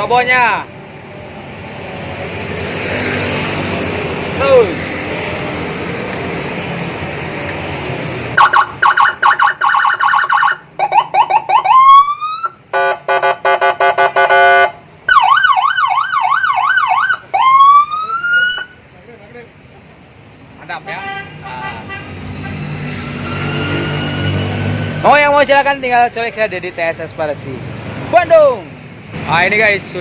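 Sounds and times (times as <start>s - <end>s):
electronic police siren: 8.4s - 12.6s, 14.5s - 18.8s.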